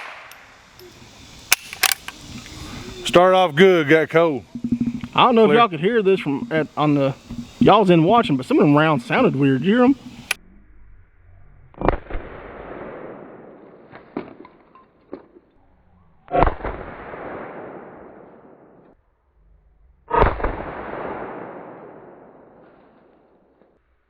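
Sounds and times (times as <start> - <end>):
gunshots with rolling echo: 0.0 - 0.7, 11.8 - 14.4, 16.3 - 18.9, 20.1 - 23.4
small clicks: 0.2 - 2.6.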